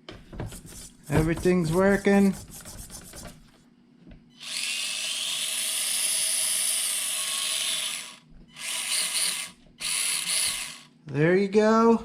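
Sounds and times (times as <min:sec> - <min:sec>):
electric motor and gears whining: 0:04.4 - 0:10.9.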